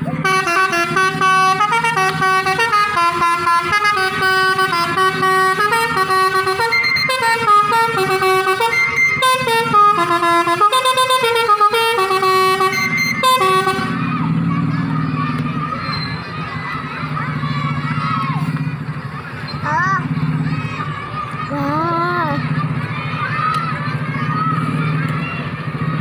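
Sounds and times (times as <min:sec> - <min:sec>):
bus air horns playing melody: 0:00.1 - 0:14.4.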